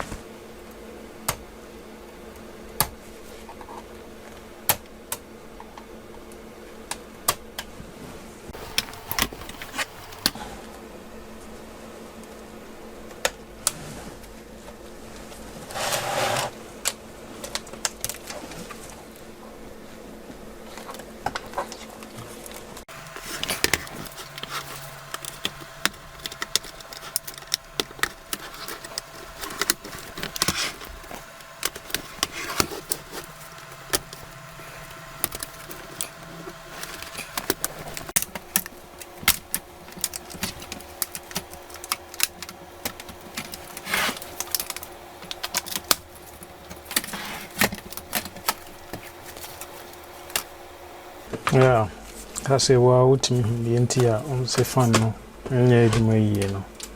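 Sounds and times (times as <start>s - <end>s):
faint steady hum: 0.0s - 56.9s
laptop parts clicking and rattling: 8.6s - 10.4s, 22.9s - 51.3s.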